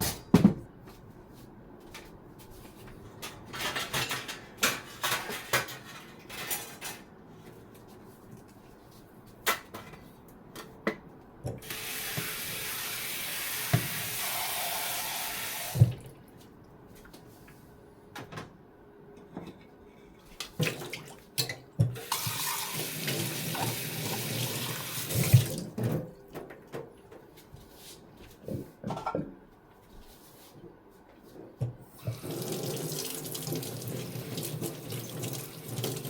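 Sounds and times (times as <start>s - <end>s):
tap running into a sink: 13.6s - 14.2s.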